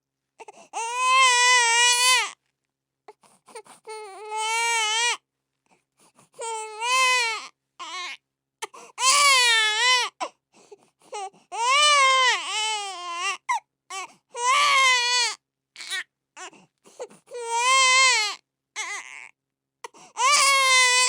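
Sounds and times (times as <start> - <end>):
baby crying: 0.4 - 2.4, 3.9 - 5.2, 6.4 - 8.2, 9.0 - 10.3, 11.2 - 21.0.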